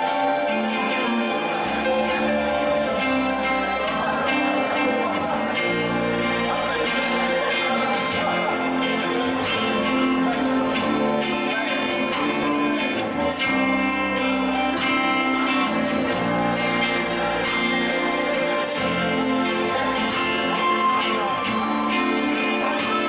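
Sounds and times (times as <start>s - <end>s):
guitar: 0.0s - 23.0s
person singing: 0.0s - 23.0s
worship band music: 0.0s - 23.0s.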